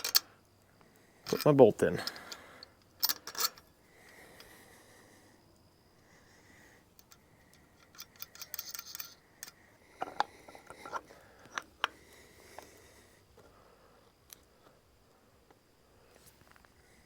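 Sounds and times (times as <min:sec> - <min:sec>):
metallic clicks of hand tools: 0:00.0 - 0:00.3, 0:01.2 - 0:03.6, 0:07.0 - 0:12.0.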